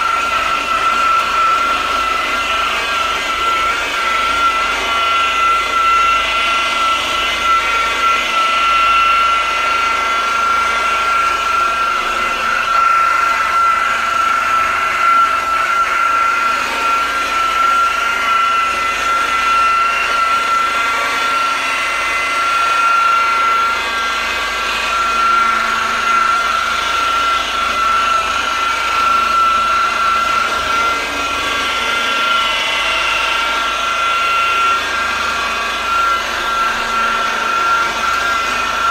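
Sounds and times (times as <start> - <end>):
electric power tool whining: 0.0 - 38.9.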